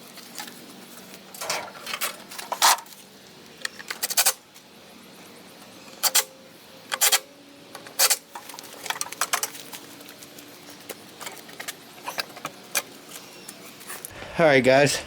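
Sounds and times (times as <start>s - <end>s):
metal hardware clattering: 1.4s - 2.9s, 7.8s - 9.8s.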